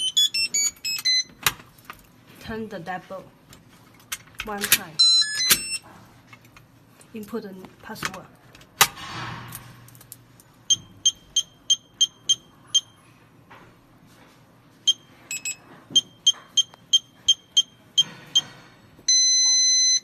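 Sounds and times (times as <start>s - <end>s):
keypad beeps: 0.0s - 1.4s, 5.0s - 5.8s, 10.7s - 13.0s, 14.8s - 18.5s, 19.1s - 20.0s.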